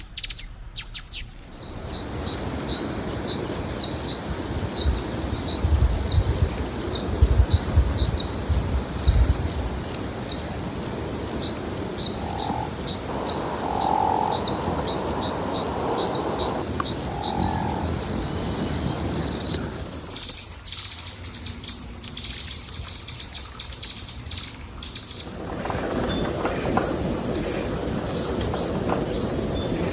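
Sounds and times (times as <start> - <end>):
low held bird notes: 0.0 - 20.2
low rumbling noise: 0.0 - 20.4
birds chirping: 0.0 - 29.9.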